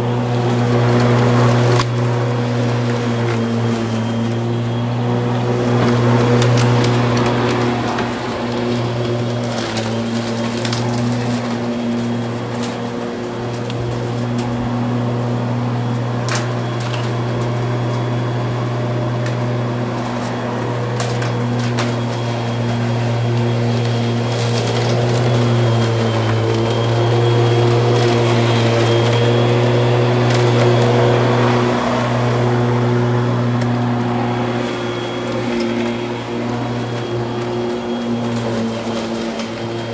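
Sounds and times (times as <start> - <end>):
lawn mower running: 0.0 - 39.9.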